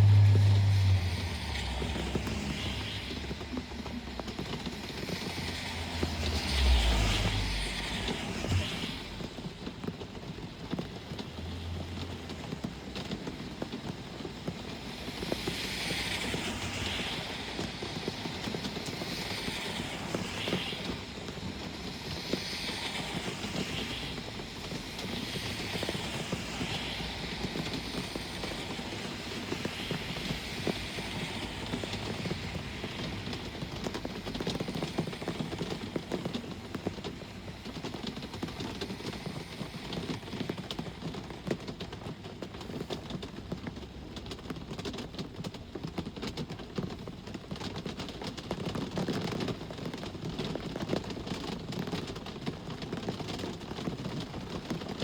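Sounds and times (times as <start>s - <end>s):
deep rumbling vehicle pass: 0.0s - 21.7s, 22.3s - 41.5s
steady rain: 0.0s - 55.0s
tyres hissing on wet road: 0.0s - 55.0s.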